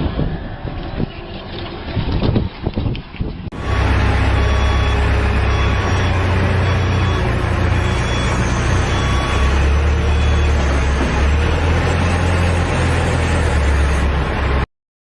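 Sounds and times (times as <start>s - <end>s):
heavy vehicle engine running: 3.5s - 14.7s.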